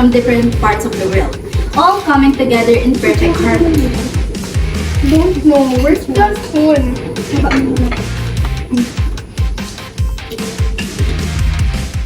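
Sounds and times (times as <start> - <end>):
steady kick-drum beat: 0.0 - 12.0
rock music with electric guitar: 6.9 - 12.0.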